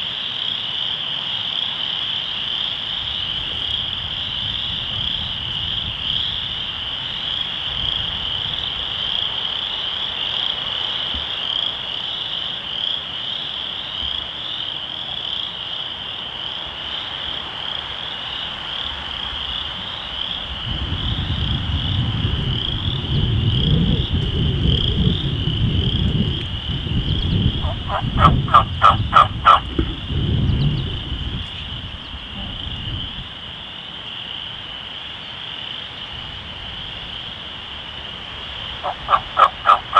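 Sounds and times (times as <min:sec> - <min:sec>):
frogs trilling: 0:00.0 - 0:39.9
turkey yelps: 0:27.6 - 0:29.8, 0:38.8 - 0:39.9.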